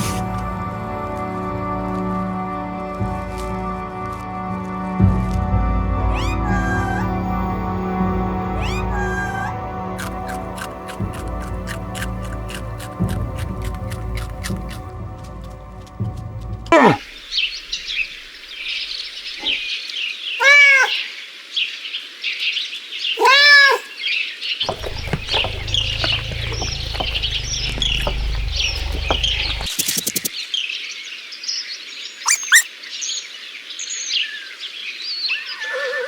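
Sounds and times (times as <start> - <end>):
cat meowing: 6.1 - 7.2, 8.6 - 9.6, 16.7 - 17.0, 20.4 - 21.0, 23.2 - 23.9
small birds chirping: 6.1 - 7.2, 8.0 - 14.9, 16.7 - 35.7
low rumble: 24.7 - 29.7.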